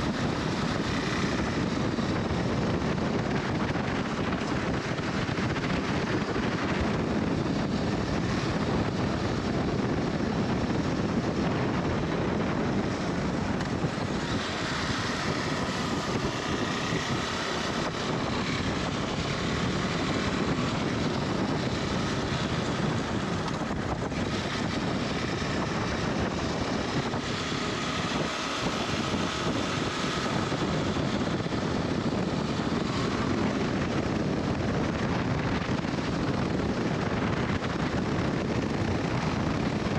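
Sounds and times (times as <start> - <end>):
motorcycle engine running: 0.0 - 39.9
wind noise on microphone: 0.0 - 39.9.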